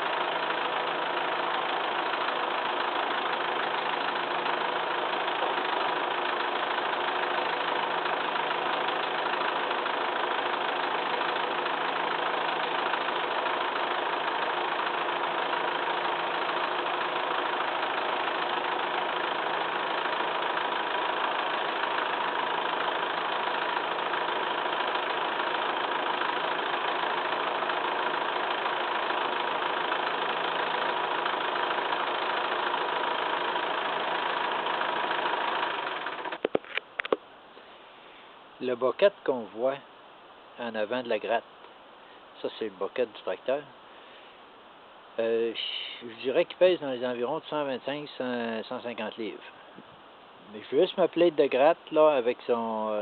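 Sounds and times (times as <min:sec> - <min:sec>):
tractor diesel engine idling: 0:00.0 - 0:37.1.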